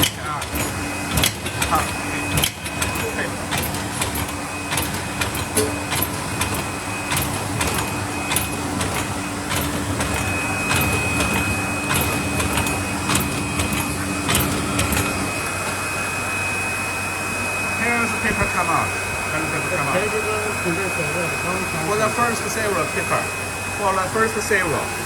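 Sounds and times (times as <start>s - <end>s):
sharp machine clicks: 0.0s - 15.8s
machine running: 0.0s - 25.0s
thin high whine: 0.0s - 25.0s.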